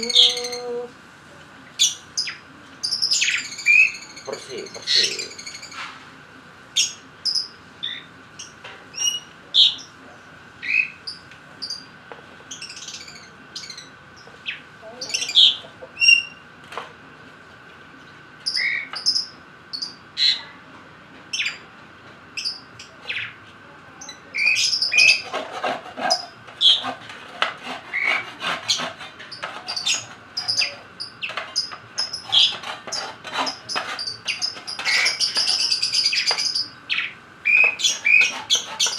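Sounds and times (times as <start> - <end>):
lovebirds chirping: 0.0 - 0.9, 12.5 - 16.4, 18.4 - 20.5, 24.0 - 25.3, 28.7 - 38.9.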